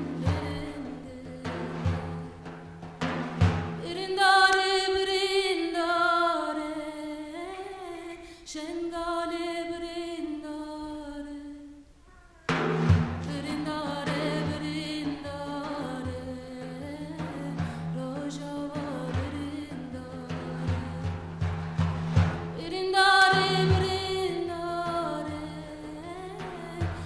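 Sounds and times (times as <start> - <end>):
woman singing: 0.0 - 2.4, 3.8 - 11.9, 13.2 - 21.5, 22.5 - 27.0
percussion: 0.0 - 5.8, 12.5 - 27.0.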